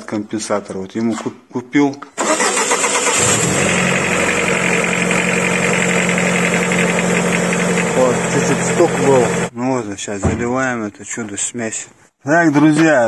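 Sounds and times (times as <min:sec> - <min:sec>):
car engine starting and idling: 0:02.2 - 0:09.5.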